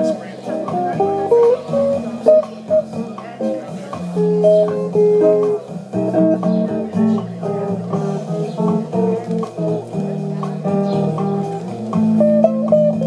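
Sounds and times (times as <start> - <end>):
solo guitar samba rhythm: 0.0 - 13.0.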